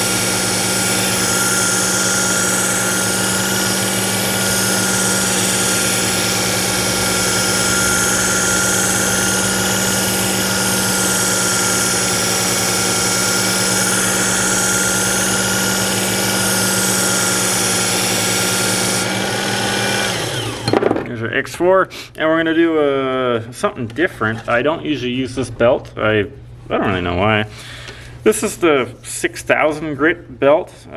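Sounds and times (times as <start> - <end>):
belt sharpener grinding knife: 0.0 - 20.7
motor spinning down: 0.0 - 20.8.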